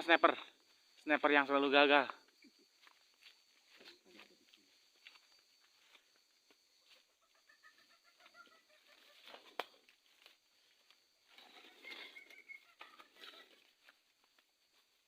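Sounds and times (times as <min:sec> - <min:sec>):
civet calls: 0:07.0 - 0:09.8, 0:11.3 - 0:13.8.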